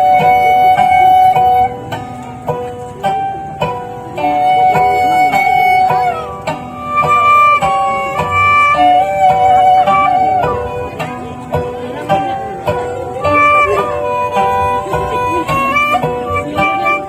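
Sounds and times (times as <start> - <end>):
bowed fiddle melody: 0.0 - 17.0
plucked zither notes: 0.0 - 17.0.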